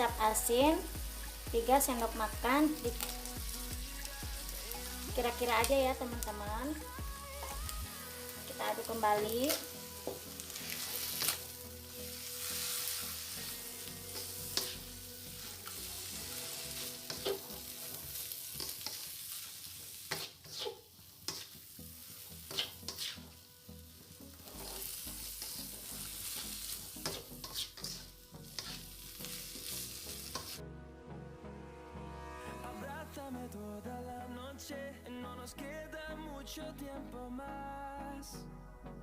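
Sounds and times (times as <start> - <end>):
food sizzling in a frying pan: 0.0 - 30.6
spatula scraping a pan: 14.1 - 15.8, 16.4 - 21.7, 22.4 - 23.4, 24.4 - 30.6.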